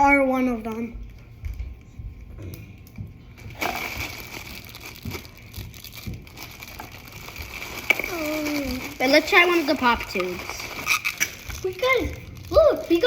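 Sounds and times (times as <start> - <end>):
plastic toys and packaging rustling: 3.3 - 13.0.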